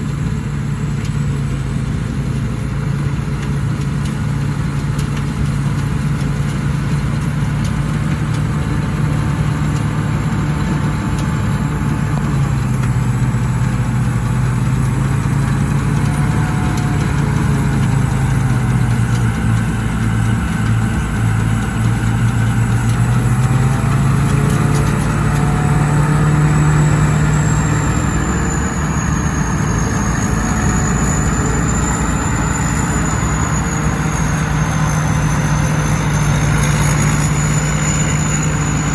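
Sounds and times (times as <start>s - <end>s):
diesel engine hum: 0.0s - 38.9s
thin high whine: 23.7s - 38.9s.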